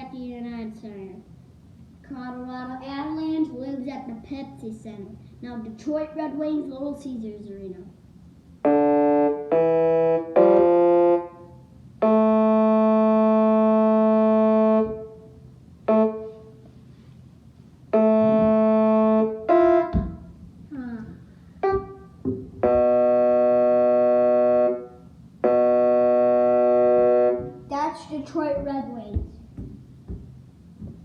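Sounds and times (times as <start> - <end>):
keyboard chords: 8.6 - 16.4, 17.9 - 20.9, 21.6 - 27.9.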